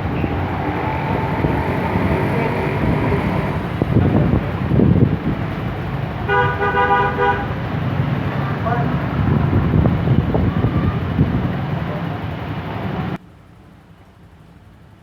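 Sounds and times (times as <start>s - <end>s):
motorcycle engine running: 0.0s - 8.8s.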